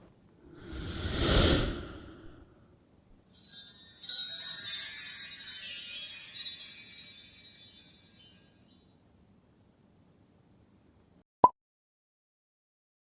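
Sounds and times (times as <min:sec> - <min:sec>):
whoosh sound effect: 0:00.6 - 0:02.4
tinkling bell-like music sting: 0:03.4 - 0:08.9.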